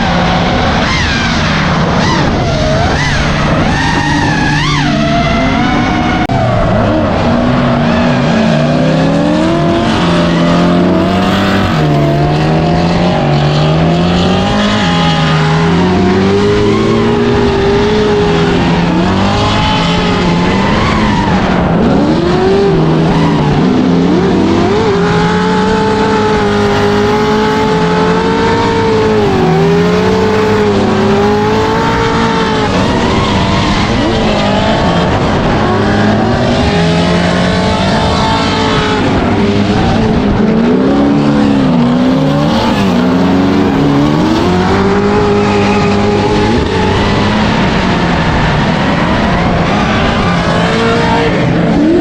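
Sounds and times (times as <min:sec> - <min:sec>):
car engines revving: 0:00.0 - 0:52.0
tyre squeal: 0:00.8 - 0:12.7.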